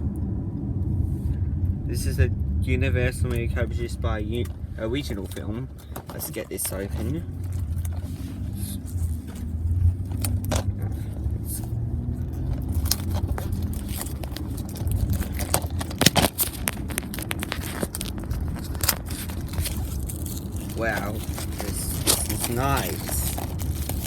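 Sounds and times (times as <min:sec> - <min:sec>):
steady low hum: 0:00.0 - 0:24.0
plastic wrap tearing and crinkling: 0:06.0 - 0:10.8, 0:12.2 - 0:24.0.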